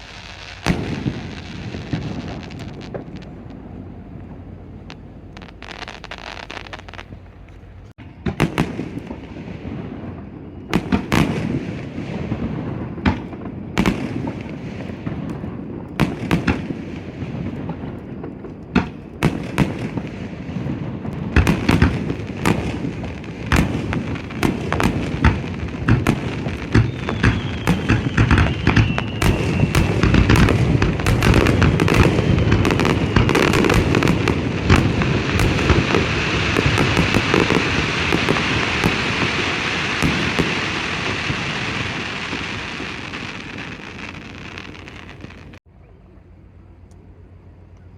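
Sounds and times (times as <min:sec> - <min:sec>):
firework shells bursting: 0:00.0 - 0:09.3, 0:21.1 - 0:45.6
fireworks crackling: 0:00.0 - 0:45.6.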